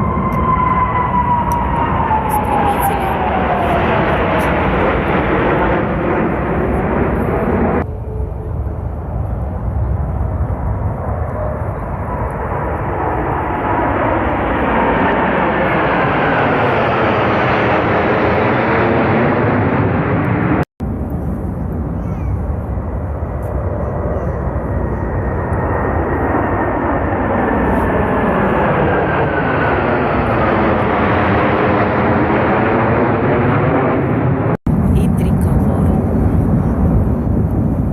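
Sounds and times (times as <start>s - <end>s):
jet aircraft flying overhead: 0.0s - 37.9s.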